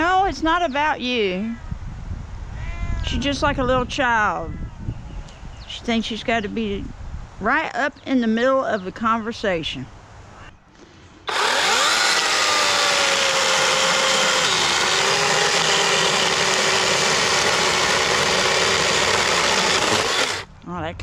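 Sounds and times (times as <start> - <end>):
electric chainsaw cutting wood: 11.3 - 20.5.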